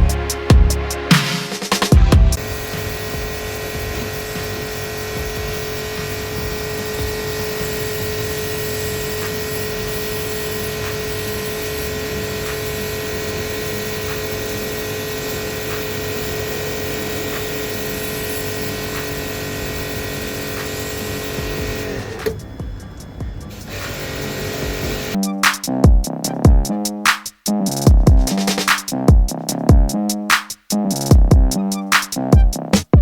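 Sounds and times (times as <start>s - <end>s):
pressure washer pump running: 2.4s - 22.3s.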